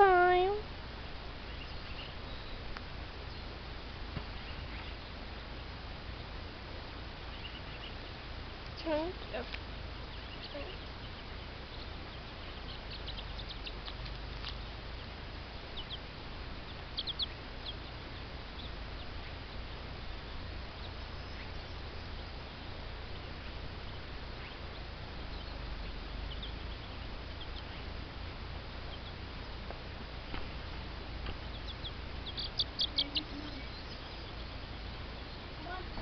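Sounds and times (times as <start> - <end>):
chicks peeping: 0.0 - 36.0
steady low hum: 0.0 - 36.0.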